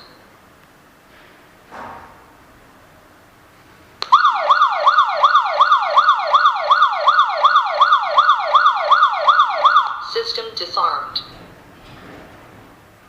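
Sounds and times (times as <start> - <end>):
alarm siren wailing: 4.0 - 10.2.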